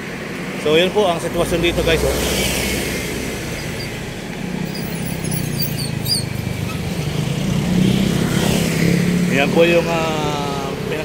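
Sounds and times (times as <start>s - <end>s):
road traffic: 0.0s - 11.0s
vehicle engine drone: 0.0s - 11.0s
high-pitched squeaks: 3.6s - 4.0s, 4.7s - 7.0s.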